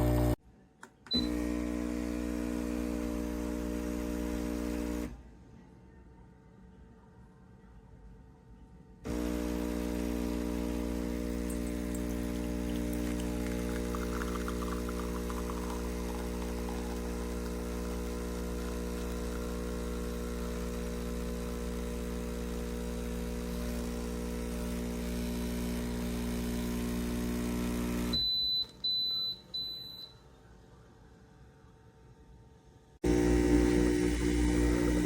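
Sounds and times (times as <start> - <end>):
espresso machine pump humming: 0.0 - 0.4, 1.2 - 5.1, 9.1 - 28.2, 33.0 - 35.0
coffee pattering into cup: 11.5 - 18.0.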